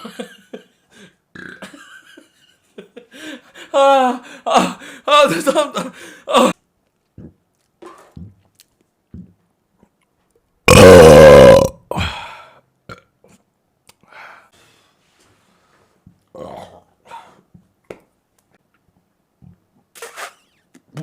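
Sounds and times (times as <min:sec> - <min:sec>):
person burping: 0:01.3 - 0:01.8, 0:10.7 - 0:13.4, 0:16.3 - 0:17.0.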